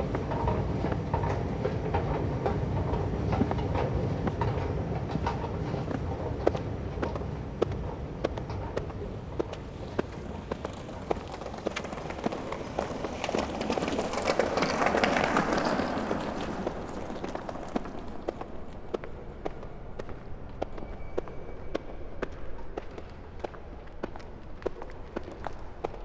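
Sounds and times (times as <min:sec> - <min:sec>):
running footsteps: 0:00.0 - 0:26.0.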